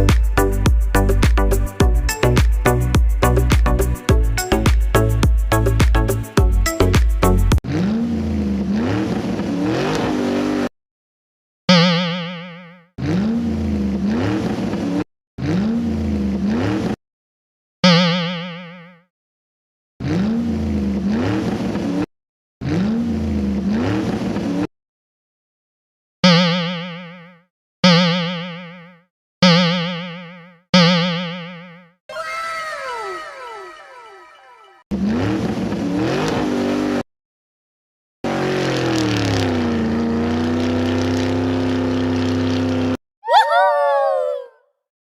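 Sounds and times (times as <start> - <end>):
car engine revving: 7.7 - 10.7, 34.9 - 37.0, 38.2 - 43.0
cartoon boing: 11.7 - 12.9, 17.8 - 19.1, 26.2 - 34.8.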